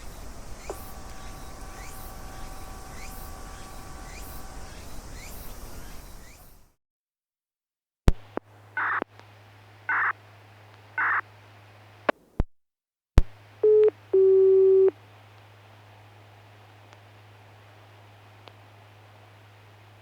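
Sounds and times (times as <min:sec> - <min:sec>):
low amplifier hum: 0:00.0 - 0:06.3
short beeps: 0:13.6 - 0:14.9.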